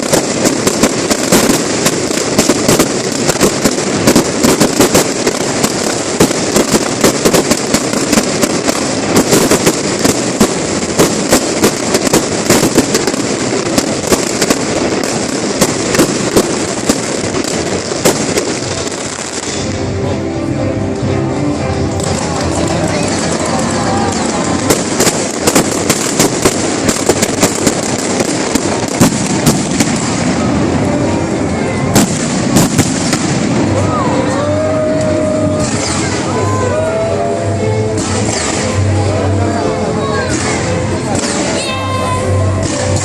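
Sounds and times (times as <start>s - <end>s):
fireworks bangs and crackles: 0.0s - 43.0s.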